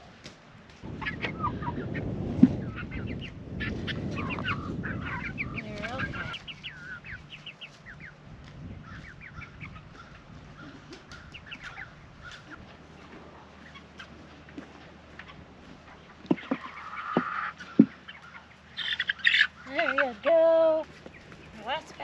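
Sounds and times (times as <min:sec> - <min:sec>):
chicks peeping: 0:00.7 - 0:22.0.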